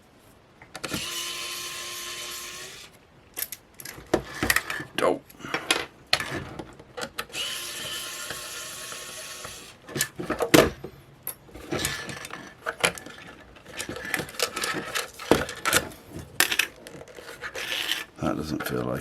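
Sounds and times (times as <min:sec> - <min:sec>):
power tool motor whirring: 0:00.8 - 0:03.0, 0:07.2 - 0:10.2.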